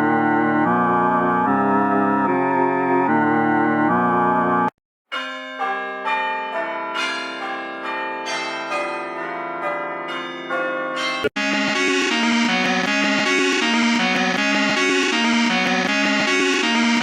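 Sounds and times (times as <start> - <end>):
keyboard-like music: 0.0 - 17.0
music clip: 0.0 - 17.0
bell-like chime melody: 5.1 - 14.0.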